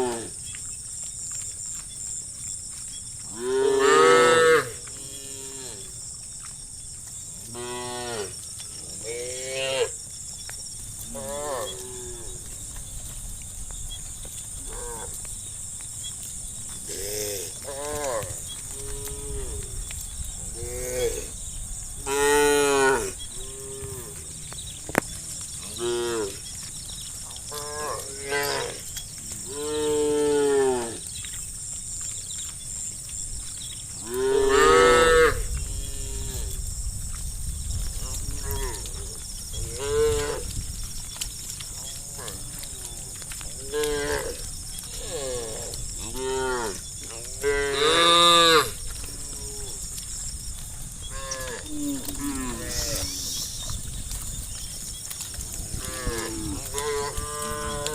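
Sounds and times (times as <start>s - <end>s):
steady high hiss: 51.7s - 53.7s.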